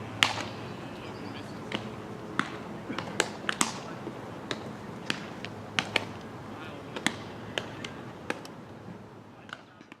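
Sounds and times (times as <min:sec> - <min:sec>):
outdoor background noise: 0:00.0 - 0:10.0
balls striking bats and gloves: 0:00.2 - 0:00.6, 0:01.7 - 0:06.2, 0:06.9 - 0:08.5, 0:09.4 - 0:10.0.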